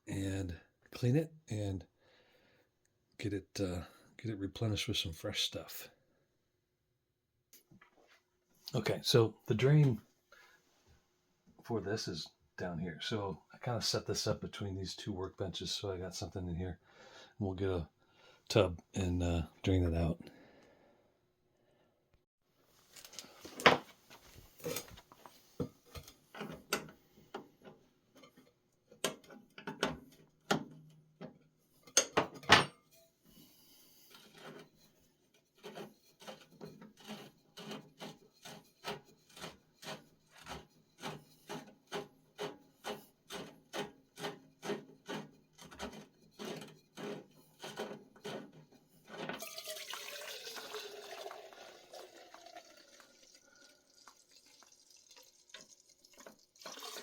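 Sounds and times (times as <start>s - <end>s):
handling clatter and knocks: 22.9s - 33.0s
rubbing or scraping strokes: 33.4s - 49.3s
liquid gushing into tub: 49.4s - 57.0s.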